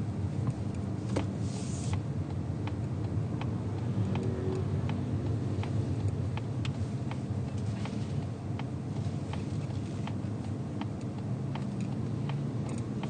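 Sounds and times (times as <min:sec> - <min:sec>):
low rumble inside car: 0:00.0 - 0:13.0
brief hiss: 0:01.4 - 0:02.0.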